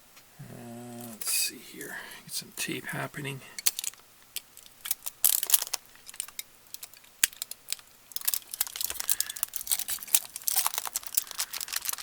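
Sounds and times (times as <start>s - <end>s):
aluminium foil crinkling: 3.6s - 12.0s.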